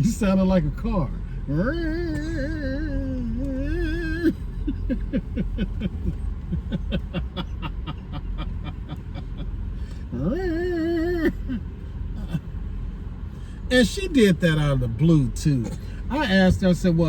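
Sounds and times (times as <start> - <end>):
woman imitating car engine: 1.5 - 12.4.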